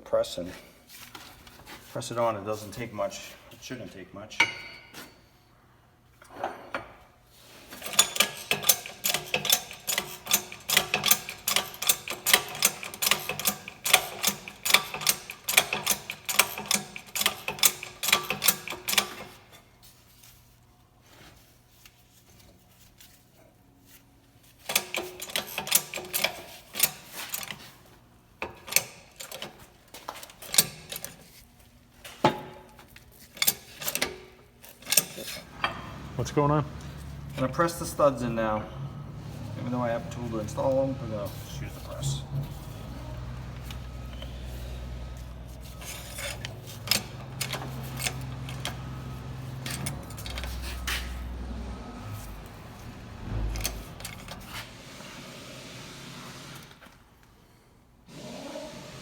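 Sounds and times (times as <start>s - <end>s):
rapid mechanical clicking: 7.8s - 19.3s.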